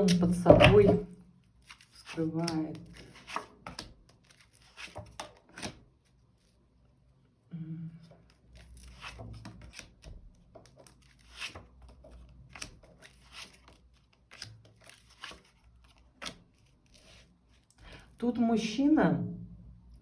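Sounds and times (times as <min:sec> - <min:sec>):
cards sliding and flicking: 0:01.6 - 0:05.8, 0:08.6 - 0:10.0, 0:10.6 - 0:17.2.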